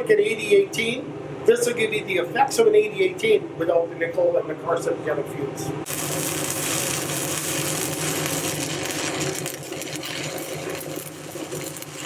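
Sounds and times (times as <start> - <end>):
steady low hum: 0.0 - 12.0
welding arc crackling and sizzling: 5.8 - 12.0.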